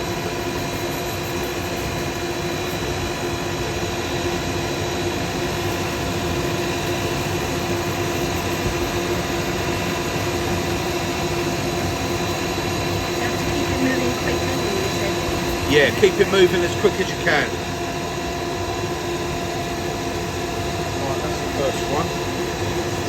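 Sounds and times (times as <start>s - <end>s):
dust extractor humming: 8.6s - 23.0s.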